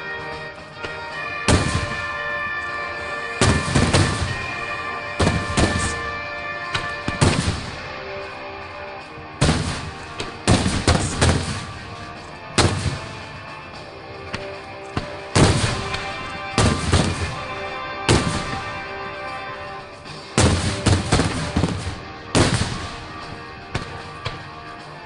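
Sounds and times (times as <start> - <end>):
crackling firework tail: 3.4 - 4.5, 7.1 - 8.0, 9.4 - 12.0, 20.4 - 23.2.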